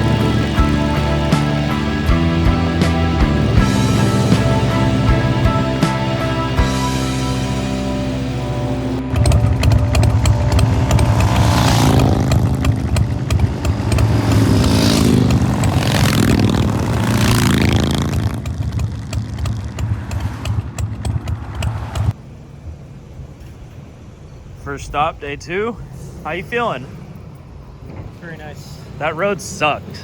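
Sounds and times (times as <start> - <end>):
motorcycle engines running: 0.0 - 22.2.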